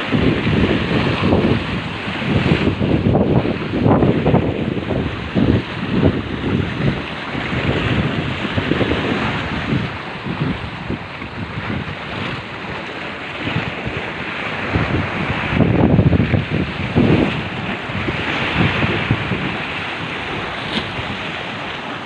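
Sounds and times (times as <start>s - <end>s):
water washing: 0.0s - 22.0s
wind buffeting microphone: 0.0s - 22.0s.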